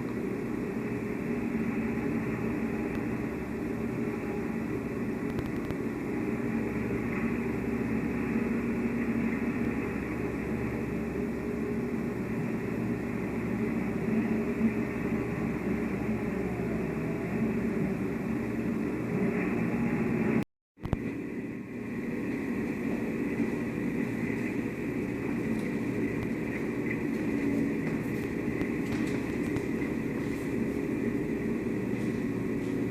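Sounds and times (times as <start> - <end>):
heavy machine engine rumbling: 0.0 - 32.9.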